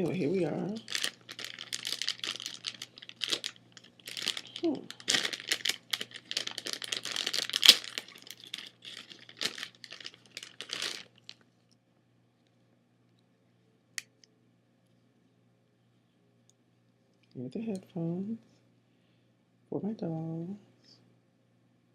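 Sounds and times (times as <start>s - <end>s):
packaging crinkling: 0.1s - 11.4s.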